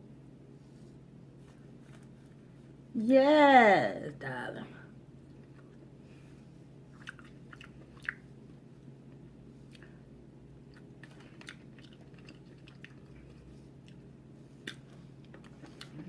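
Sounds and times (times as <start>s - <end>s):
low steady hum: 0.0s - 16.0s
chewing mouth clicks: 6.9s - 8.2s, 10.7s - 14.0s, 14.6s - 16.0s.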